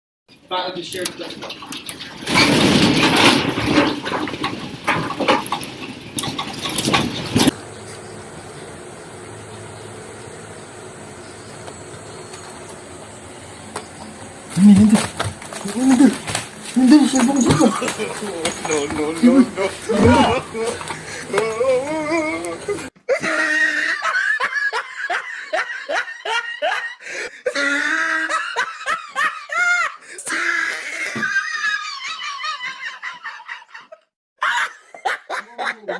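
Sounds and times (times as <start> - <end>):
rattling knocks and clatters: 1.0 - 7.6, 13.7 - 21.6
hearty laughter: 14.5 - 35.9.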